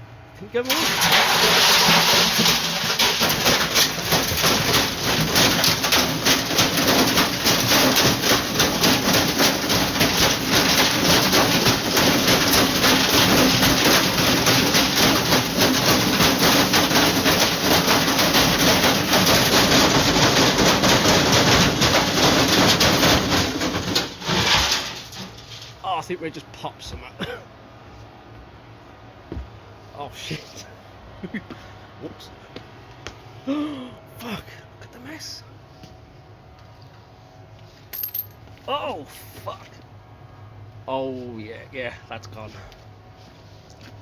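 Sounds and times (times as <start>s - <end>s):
washing machine clattering and banging: 0.7s - 25.7s.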